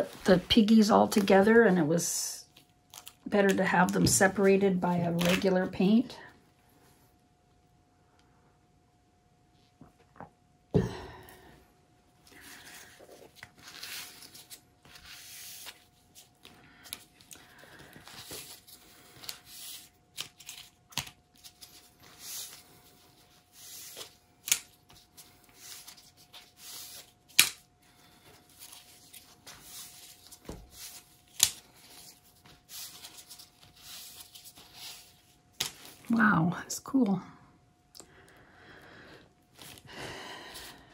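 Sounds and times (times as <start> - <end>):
faint steady hum: 0.0 - 40.9
rustling and crinkling handling: 12.3 - 36.4.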